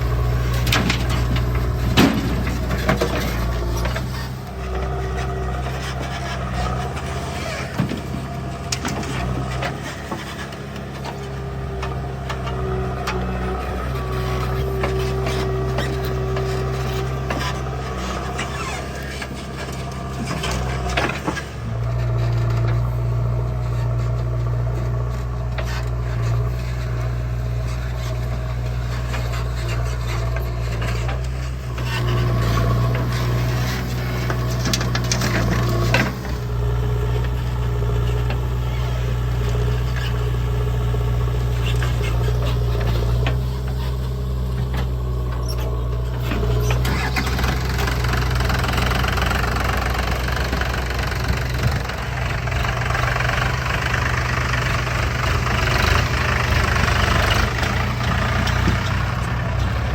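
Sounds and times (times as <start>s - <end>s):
clunks and scraping: 0.0s - 59.9s
heavy machinery diesel engine: 0.0s - 59.9s.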